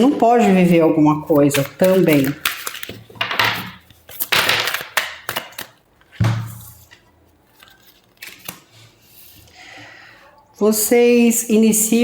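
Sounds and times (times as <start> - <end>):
cards shuffling: 0.4 - 8.8.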